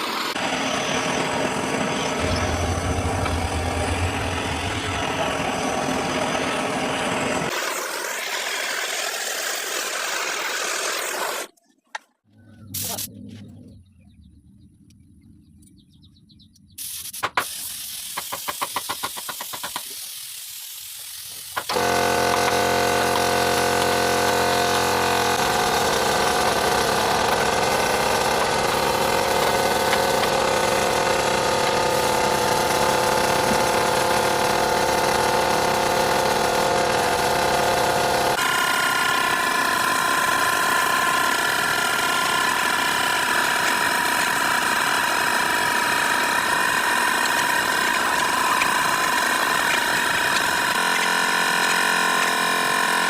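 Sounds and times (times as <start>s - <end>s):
machine hissing over motor hum: 0.0s - 9.1s, 16.8s - 26.8s.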